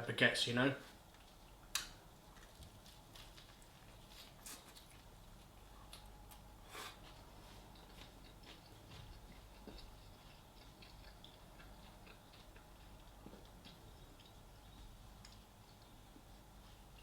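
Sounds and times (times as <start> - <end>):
chewing sandwich mouth clicks: 7.7 - 14.5, 15.2 - 15.9.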